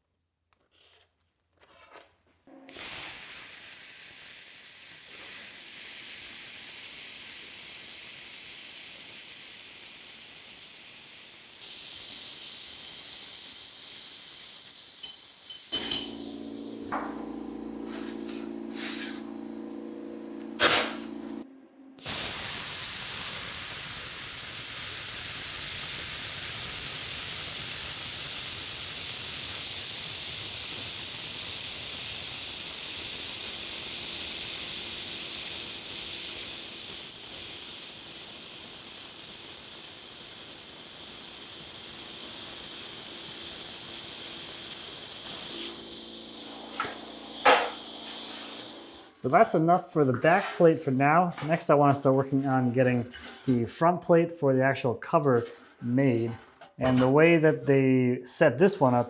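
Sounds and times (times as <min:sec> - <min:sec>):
plasma cutter hissing: 0:02.7 - 0:21.4, 0:22.0 - 0:53.8
low hum: 0:15.8 - 0:22.0.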